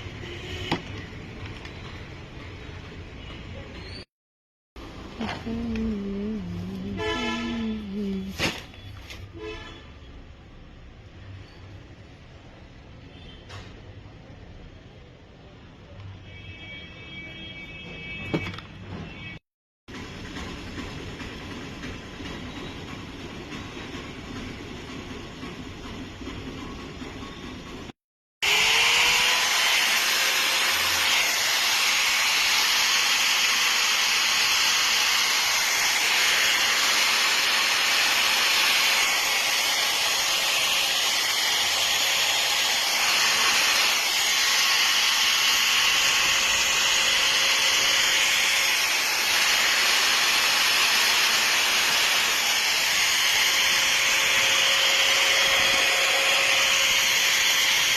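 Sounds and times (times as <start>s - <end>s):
electric cutter motor whining: 28.4s - 57.9s.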